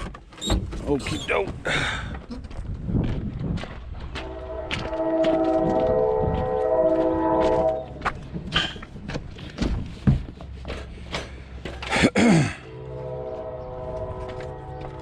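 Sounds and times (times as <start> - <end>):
horn holding a chord: 4.2 - 8.2, 12.4 - 15.0.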